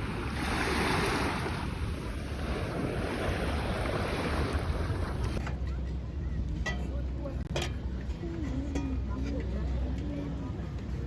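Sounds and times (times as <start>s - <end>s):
sea waves washing onto beach: 0.0s - 5.4s
wind rumbling on microphone: 0.0s - 5.5s.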